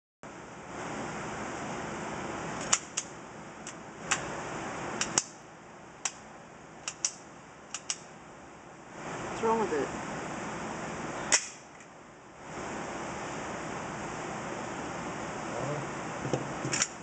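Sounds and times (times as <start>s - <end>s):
sharp irregular clicks: 6.8s - 8.0s.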